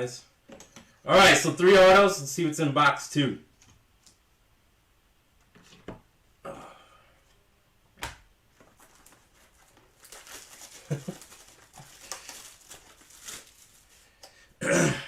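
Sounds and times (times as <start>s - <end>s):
plastic wrapping crinkling and tearing: 8.6s - 14.3s.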